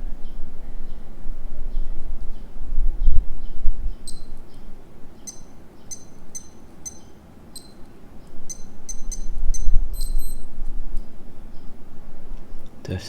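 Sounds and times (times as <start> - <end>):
digital watch beeping: 5.3 - 7.8, 8.5 - 10.5.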